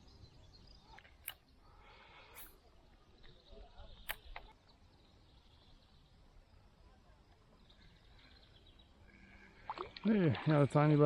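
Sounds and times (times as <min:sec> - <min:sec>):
faint outdoor ambience: 0:00.0 - 0:11.0
sharp click: 0:04.0 - 0:04.5.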